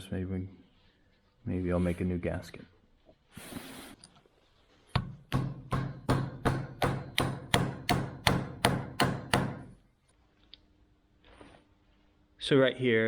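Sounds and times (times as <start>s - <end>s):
brief hiss: 3.4s - 4.0s
small hammer tapping: 5.0s - 9.6s.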